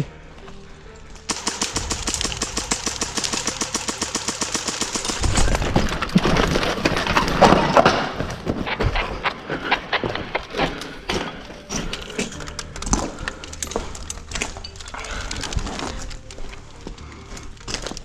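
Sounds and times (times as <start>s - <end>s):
airsoft gun full-auto burst: 1.3s - 5.8s
knocks and scuffling: 5.2s - 18.0s.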